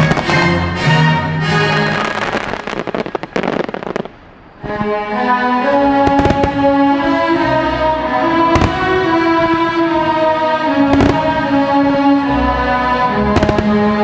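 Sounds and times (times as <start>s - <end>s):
firework bursts: 0.0s - 0.6s, 1.7s - 5.1s, 5.8s - 7.3s, 8.4s - 12.2s, 13.3s - 14.0s
fireworks crackling: 0.0s - 0.6s, 1.6s - 5.0s, 6.0s - 7.3s, 8.4s - 12.1s, 13.3s - 14.0s
orchestral music with strings: 0.0s - 3.6s, 4.6s - 14.0s.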